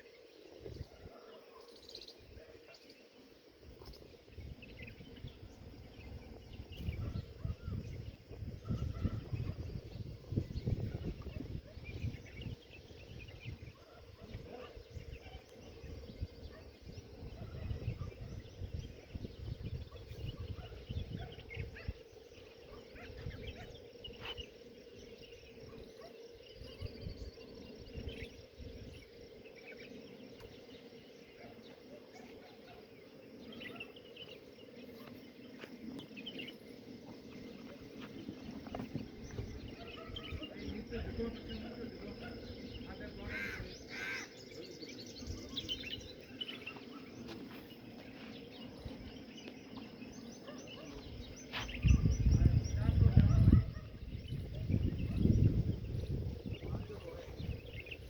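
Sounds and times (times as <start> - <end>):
faint chirps: 0.0 - 58.0
gusty wind rumble: 3.7 - 22.3, 51.0 - 58.0.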